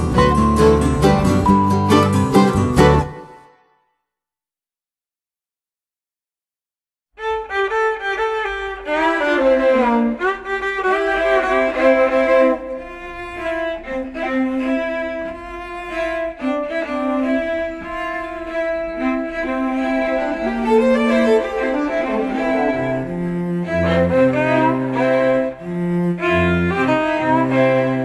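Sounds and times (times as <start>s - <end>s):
violin and cello long notes: 7.2s - 28.0s.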